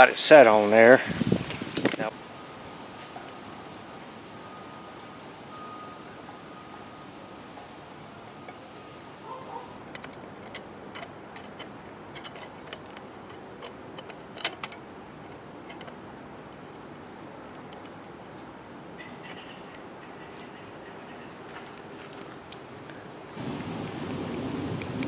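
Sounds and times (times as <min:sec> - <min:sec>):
faint steady hiss: 0:00.0 - 0:25.0
glass pieces clicking: 0:09.8 - 0:18.3.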